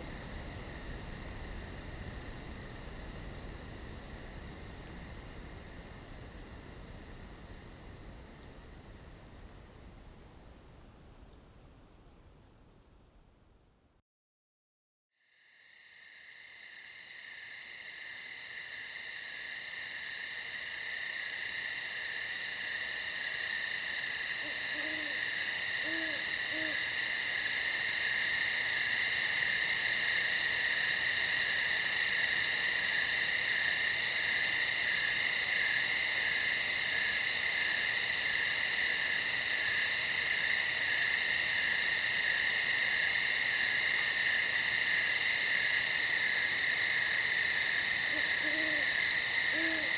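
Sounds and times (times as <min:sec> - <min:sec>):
insects trilling: 0:16.8 - 0:49.9
owl hooting faintly: 0:24.4 - 0:26.9, 0:48.0 - 0:49.9.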